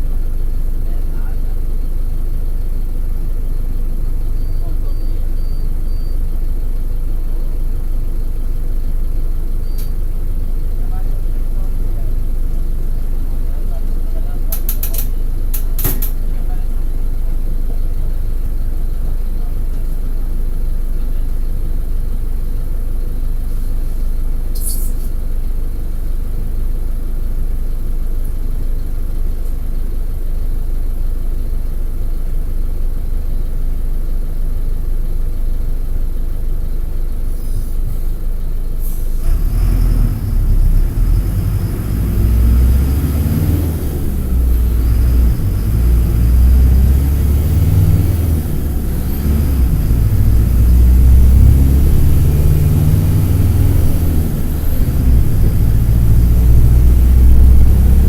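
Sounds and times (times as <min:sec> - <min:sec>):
bus diesel engine: 0:00.0 - 0:58.0
air hiss: 0:24.6 - 0:25.2, 0:37.3 - 0:37.9.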